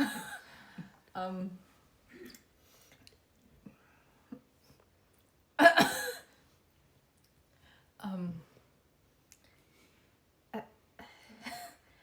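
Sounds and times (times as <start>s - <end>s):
loud short cough: 5.6s - 6.2s.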